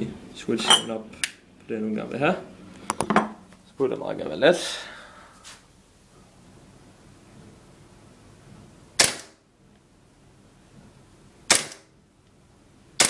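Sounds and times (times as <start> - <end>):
airsoft pistol shots: 9.0 - 9.4, 11.5 - 11.9
pistol slide blowback: 9.0 - 9.4, 11.5 - 11.9.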